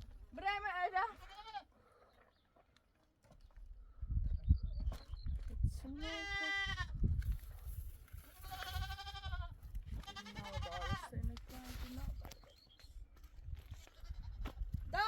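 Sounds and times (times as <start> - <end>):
goat bleating: 1.1 - 1.7, 6.0 - 7.0, 8.3 - 11.1.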